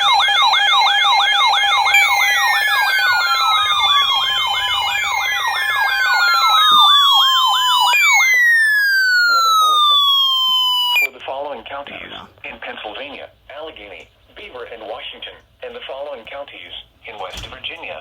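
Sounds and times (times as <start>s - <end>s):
electronic siren yelp: 0.0s - 11.1s
siren falling wails: 0.0s - 11.1s.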